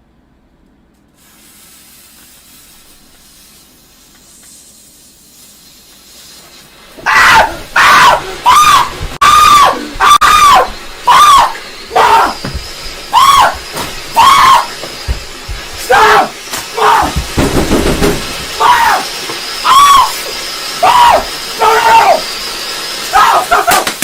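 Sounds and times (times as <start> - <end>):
firework fizzing: 1.2 - 7.0
high-pitched firework shrieks: 7.0 - 14.8, 18.4 - 24.0.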